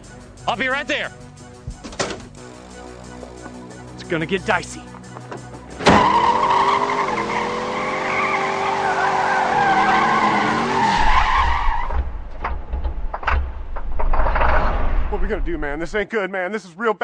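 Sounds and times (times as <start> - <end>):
tires squealing: 5.7 - 12.2
car engine revving hard: 5.9 - 11.0.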